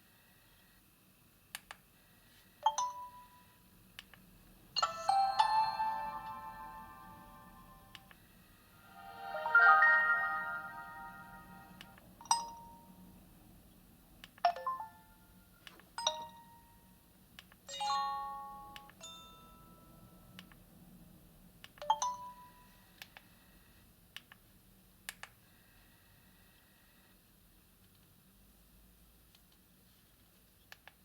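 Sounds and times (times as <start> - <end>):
phone chiming alert tones: 4.8 - 8.1, 8.8 - 12.0.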